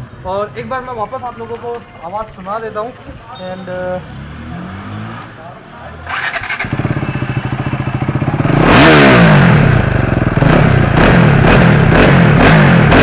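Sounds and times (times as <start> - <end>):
motorcycle engine revving: 6.0 - 13.0.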